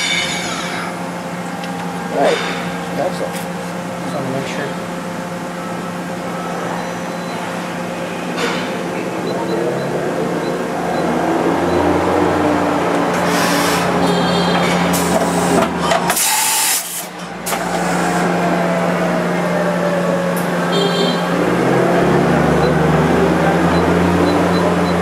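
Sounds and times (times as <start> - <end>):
machining center spindle hum: 0.0 - 25.0
air hissing: 13.2 - 14.0, 14.9 - 18.3.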